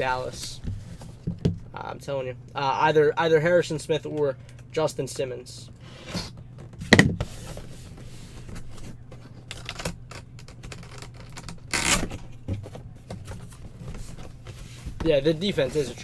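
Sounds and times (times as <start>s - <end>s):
packaging being torn open: 9.5s - 12.2s.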